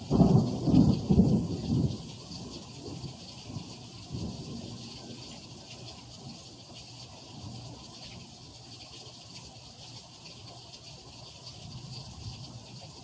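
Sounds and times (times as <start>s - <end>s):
low thunder rumble: 0.0s - 2.2s
steady rain falling: 0.0s - 13.0s.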